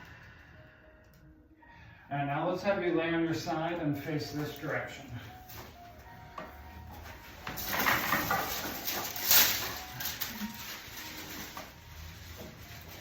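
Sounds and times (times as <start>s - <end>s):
rustling on padded table: 5.4s - 13.0s.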